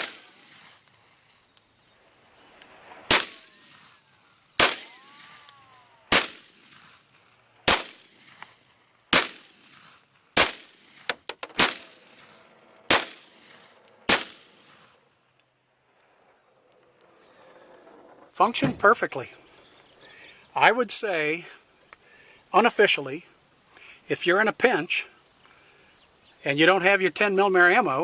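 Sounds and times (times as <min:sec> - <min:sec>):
pistol shots: 0:00.0 - 0:00.8, 0:03.1 - 0:03.8, 0:04.6 - 0:05.2, 0:06.1 - 0:06.8, 0:07.6 - 0:12.3, 0:12.9 - 0:14.9.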